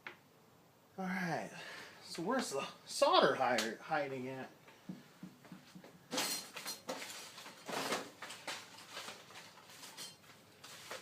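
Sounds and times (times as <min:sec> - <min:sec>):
rustling and handling noises: 0:04.6 - 0:11.0.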